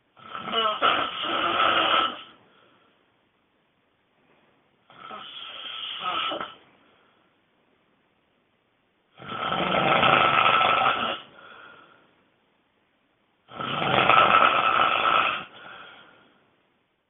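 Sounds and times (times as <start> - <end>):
person snoring loudly: 0.2 - 2.4, 4.9 - 6.6, 9.2 - 11.3, 13.5 - 16.0.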